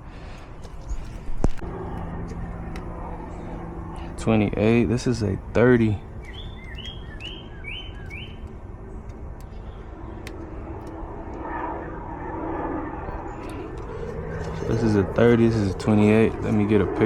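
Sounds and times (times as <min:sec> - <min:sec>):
steady outdoor rumble: 0:00.0 - 0:17.0
small bird chirping: 0:06.1 - 0:08.6.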